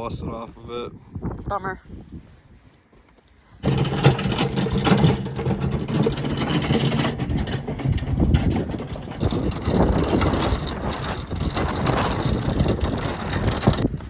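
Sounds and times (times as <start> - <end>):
machine humming and rattling: 3.6 - 14.0.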